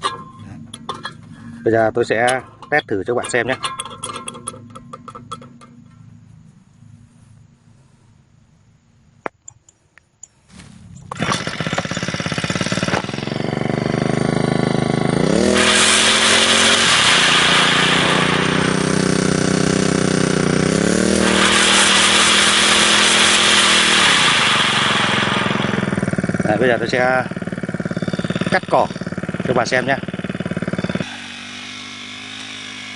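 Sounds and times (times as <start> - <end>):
brush cutter engine revving: 10.5 - 32.9
starter clicks: 11.0 - 13.6.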